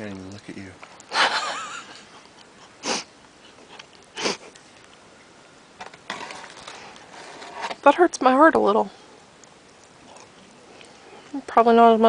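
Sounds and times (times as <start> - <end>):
person sniffing: 2.8 - 3.1, 4.2 - 4.6.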